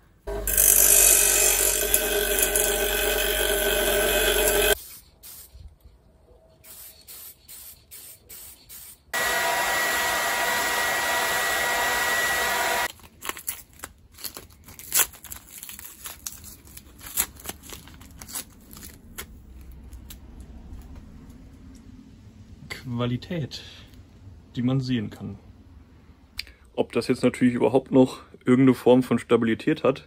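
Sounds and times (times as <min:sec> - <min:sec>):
aerosol spray can hissing: 0:04.4 - 0:05.6, 0:06.6 - 0:09.3.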